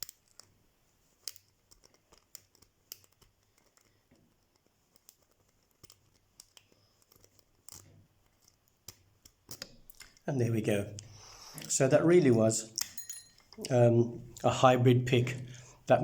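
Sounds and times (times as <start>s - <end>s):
lock pick clicking in padlock: 7.2s - 10.2s, 12.7s - 13.6s.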